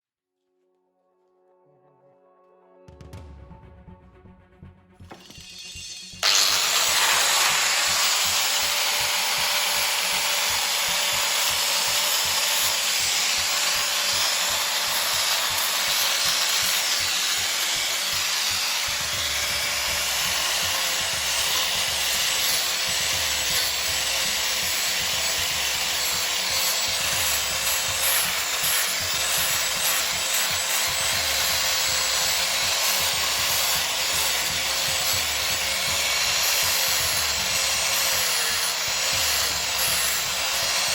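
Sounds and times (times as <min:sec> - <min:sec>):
power sander motor whine: 0:06.1 - 0:11.7
sanding on wood: 0:06.2 - 0:40.9.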